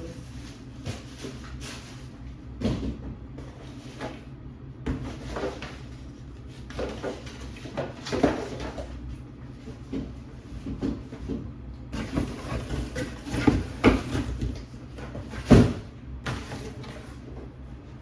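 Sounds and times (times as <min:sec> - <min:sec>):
cardboard boxes being handled: 0:09.5 - 0:17.4.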